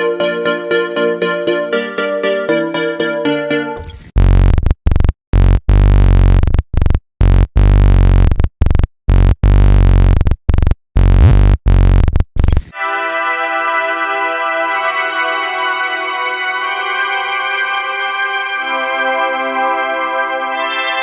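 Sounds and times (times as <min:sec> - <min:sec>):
sustained synth chord: 0:00.0 - 0:03.8
choppy synthesizer bass riff: 0:00.0 - 0:12.9.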